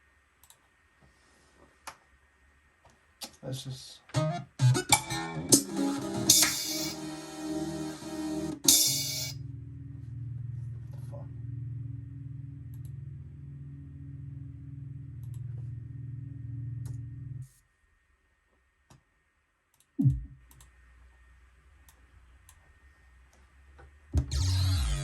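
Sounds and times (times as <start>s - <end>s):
faint hum: 0.0s - 25.0s
low synthesizer drone: 4.2s - 17.5s, 20.0s - 20.4s, 24.2s - 25.0s.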